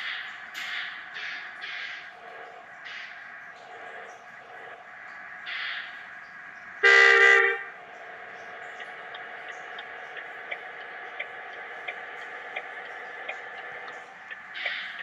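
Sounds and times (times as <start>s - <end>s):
steady hum with faint ticks: 0.0s - 15.0s
bus horn blast: 6.8s - 7.7s.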